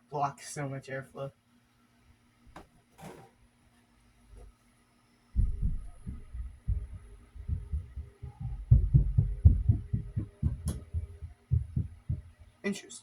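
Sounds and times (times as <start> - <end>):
faint steady hum: 0.0 - 13.0
fan air buffeting microphone: 5.4 - 12.8.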